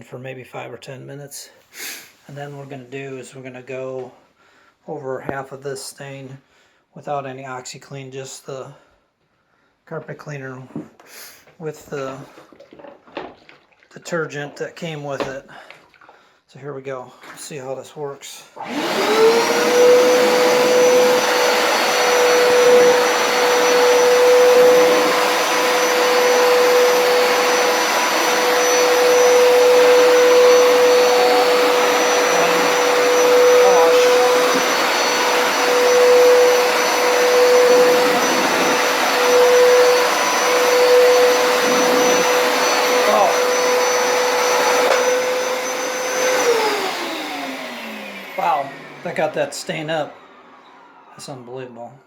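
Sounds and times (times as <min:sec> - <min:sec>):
carpet cleaner motor whine: 0:18.6 - 0:51.1
suction air rushing: 0:19.0 - 0:44.9.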